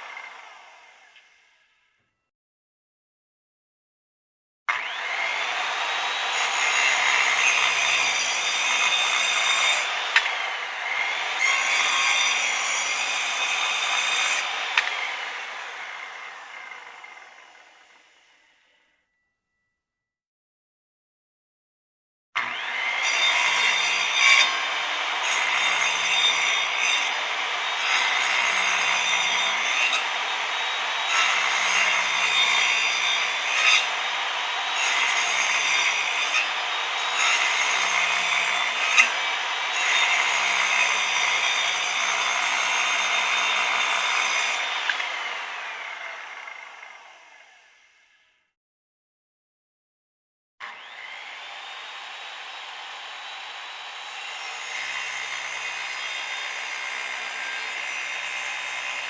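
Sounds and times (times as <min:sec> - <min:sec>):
electric saw cutting: 0:00.0 - 0:01.8, 0:04.7 - 0:18.8, 0:22.4 - 0:48.3, 0:50.6 - 0:59.0
saw motor winding down: 0:04.7 - 0:18.7, 0:22.4 - 0:48.2, 0:50.6 - 0:54.7.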